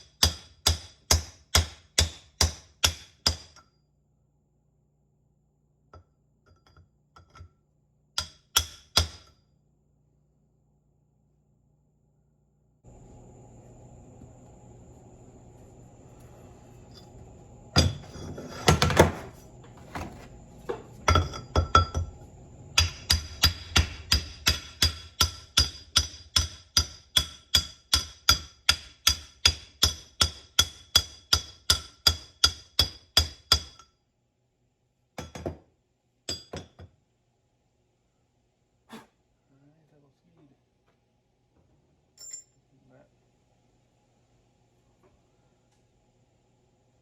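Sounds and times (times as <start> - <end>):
hammer striking metal: 0.0 - 3.7, 22.8 - 33.8.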